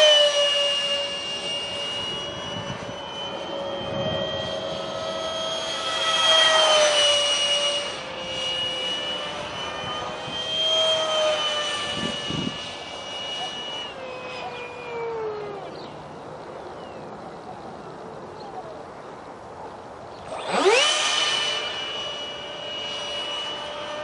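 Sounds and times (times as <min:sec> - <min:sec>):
electric ducted fan whining: 0:00.0 - 0:24.0.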